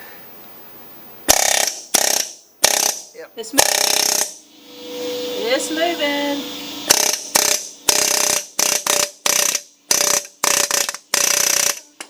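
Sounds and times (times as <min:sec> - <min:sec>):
compressed-air tool rattling: 0:01.3 - 0:03.0, 0:06.9 - 0:11.8.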